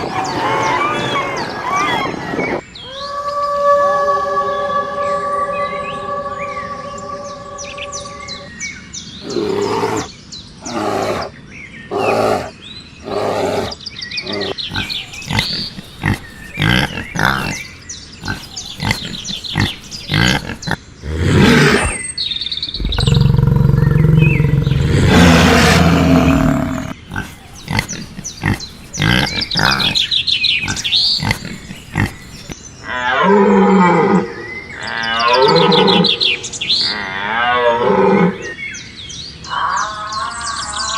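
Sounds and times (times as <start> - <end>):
animal calls: 0.0 - 8.5, 9.2 - 11.3, 11.9 - 22.1, 22.8 - 38.6
long low roar: 22.8 - 27.2.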